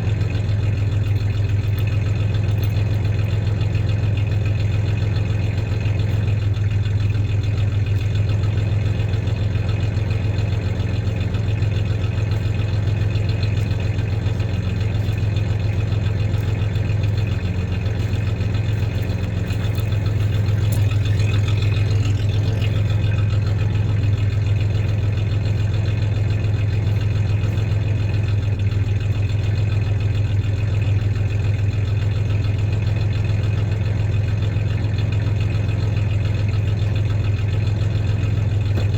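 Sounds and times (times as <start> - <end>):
engine idling with misfire: 0.0 - 38.9.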